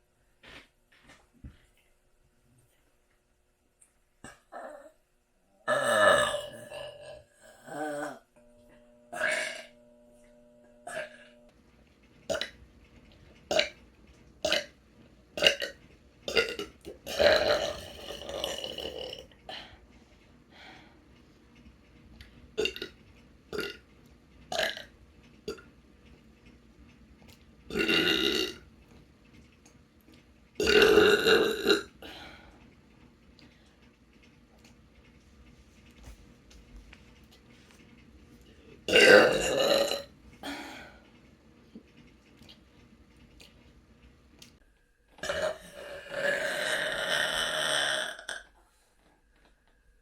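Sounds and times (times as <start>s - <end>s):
person burping: 5.7s - 8.2s, 9.1s - 9.8s, 16.3s - 19.3s, 30.6s - 32.0s, 38.9s - 40.1s, 45.2s - 48.5s.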